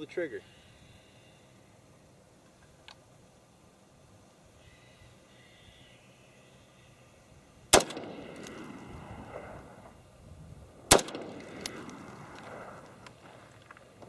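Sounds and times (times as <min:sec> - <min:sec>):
rifle shots with echo: 0:07.7 - 0:09.7, 0:10.9 - 0:12.9.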